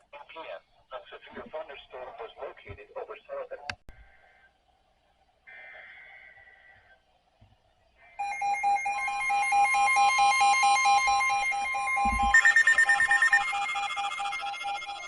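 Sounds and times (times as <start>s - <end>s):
steady high warning tone: 8.1s - 15.0s
higher alarm tones: 8.2s - 15.0s
pulsing electronic beep: 8.2s - 15.0s.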